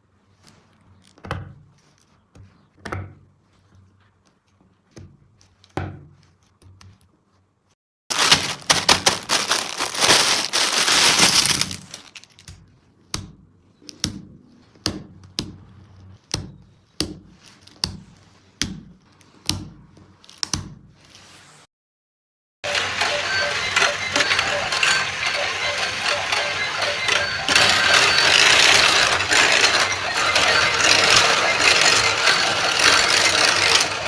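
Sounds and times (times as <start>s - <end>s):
plastic crackling and rustling: 8.1s - 12.7s, 27.5s - 34.0s
plastic toy clicks and knocks: 23.8s - 34.0s.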